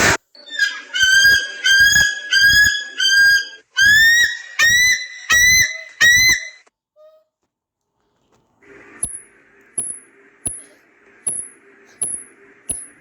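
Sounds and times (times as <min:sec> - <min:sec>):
animal-sound ringtone call: 0:00.4 - 0:03.5.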